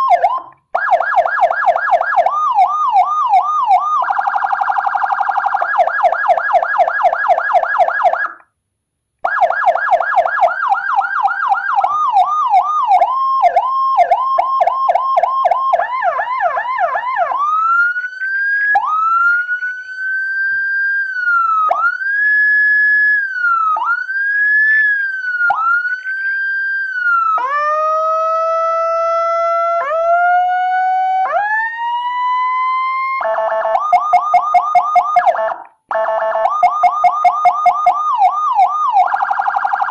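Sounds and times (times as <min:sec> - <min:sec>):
electronic siren tones: 0:00.0 - 0:08.4, 0:09.2 - 0:39.9.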